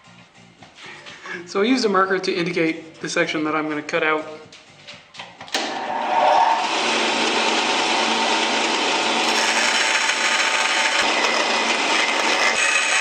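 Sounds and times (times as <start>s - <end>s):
power saw cutting wood: 5.6s - 13.0s.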